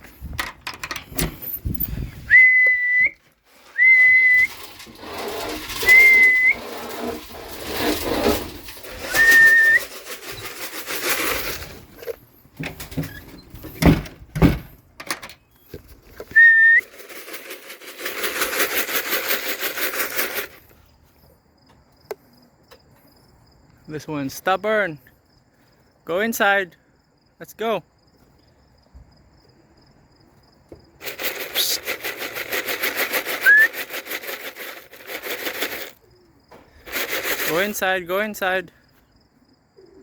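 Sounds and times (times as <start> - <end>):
person whistling short notes: 2.2 - 4.6, 5.8 - 6.6, 9.0 - 9.9, 16.3 - 16.9, 33.4 - 33.9
rustling: 3.2 - 13.8, 15.7 - 21.2, 31.0 - 37.8
quick pulsing noise: 3.6 - 11.8, 31.0 - 36.0.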